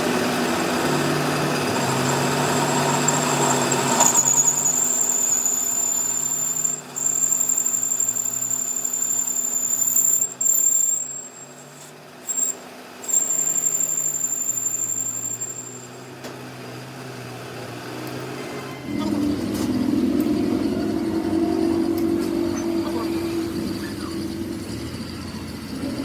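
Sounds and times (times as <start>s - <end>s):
machine high-pitched whine: 0.0s - 26.0s
low hum: 18.7s - 26.0s.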